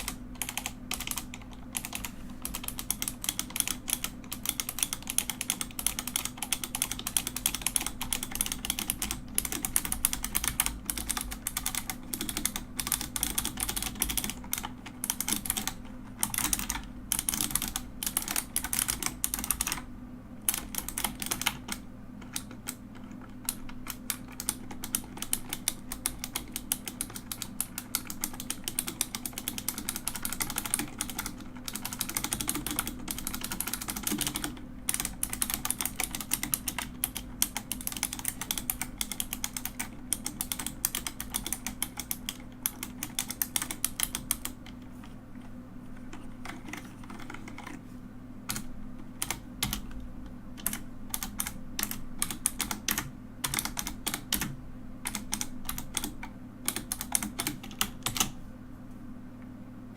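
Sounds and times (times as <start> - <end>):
mechanical keyboard typing: 0.0 - 45.2, 46.0 - 47.8, 48.4 - 58.4.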